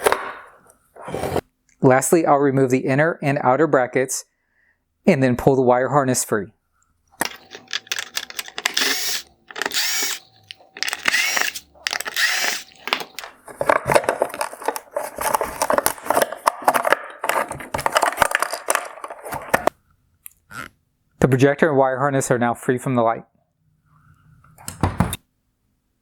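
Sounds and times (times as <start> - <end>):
plastic clicking and rattling: 7.2 - 19.7
cordless power screwdriver whirring: 7.3 - 13.3.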